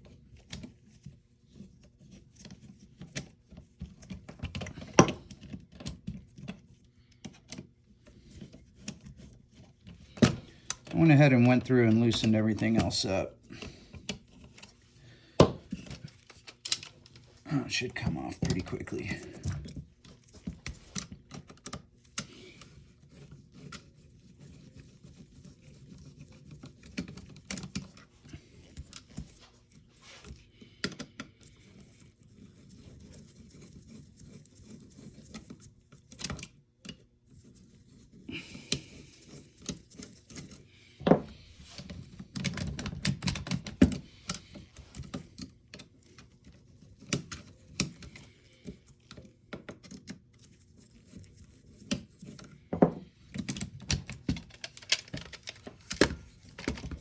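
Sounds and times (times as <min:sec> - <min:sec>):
rifle parts clicking and rattling: 0:15.4 - 0:22.7, 0:51.8 - 0:57.0.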